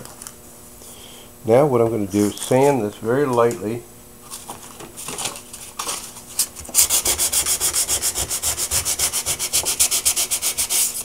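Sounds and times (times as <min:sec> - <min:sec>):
sandpaper sanding wood: 0:06.7 - 0:11.0.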